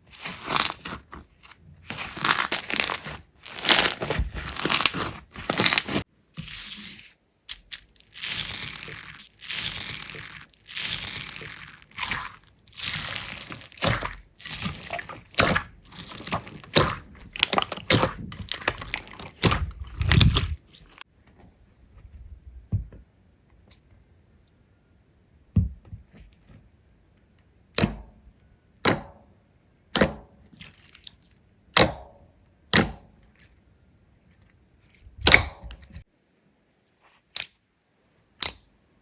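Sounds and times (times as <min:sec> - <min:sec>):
slime crackling and popping: 0:00.2 - 0:01.1, 0:01.9 - 0:06.0, 0:07.5 - 0:21.0.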